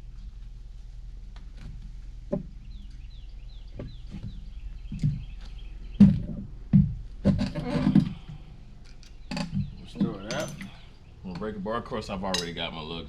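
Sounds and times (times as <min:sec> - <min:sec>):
songbird chirping: 0:01.7 - 0:13.0
sharp knocks: 0:06.0 - 0:08.3.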